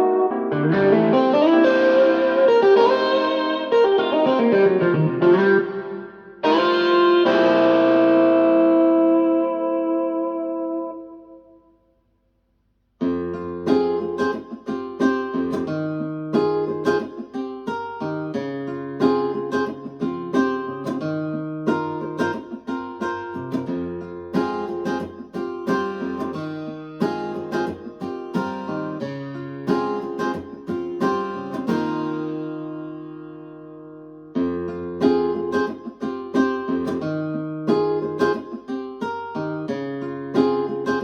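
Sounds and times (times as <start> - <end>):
guitar music over loudspeaker: 0.0 - 11.2, 13.0 - 41.0.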